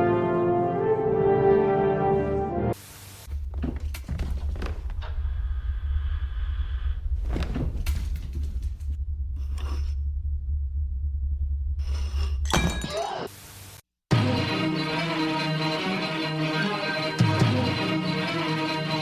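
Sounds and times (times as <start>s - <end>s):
steady low hum: 4.6s - 12.5s.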